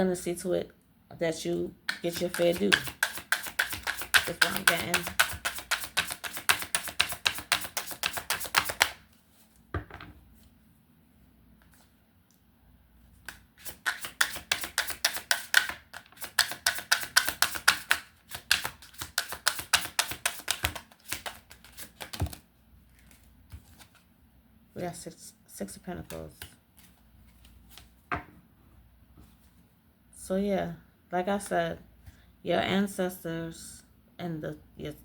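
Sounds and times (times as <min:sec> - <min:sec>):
cards knocking: 0:01.9 - 0:09.0, 0:13.2 - 0:22.4
cards being shuffled: 0:01.9 - 0:09.6, 0:13.2 - 0:24.1, 0:26.0 - 0:28.0.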